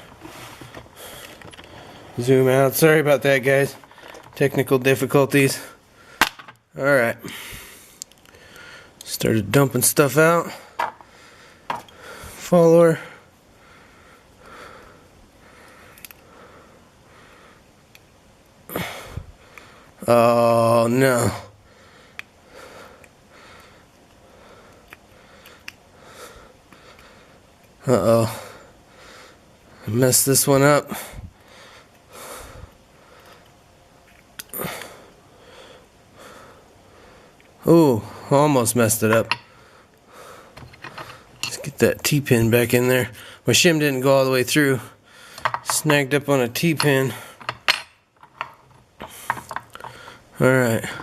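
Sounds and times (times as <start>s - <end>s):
man sniffing and breathing: 0.0s - 2.2s, 49.0s - 51.0s
small lock parts clicking: 15.9s - 16.2s.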